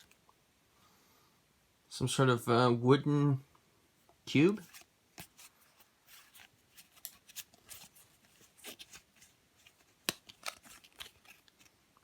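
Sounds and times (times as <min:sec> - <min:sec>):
packaging rustling: 0:04.6 - 0:11.8.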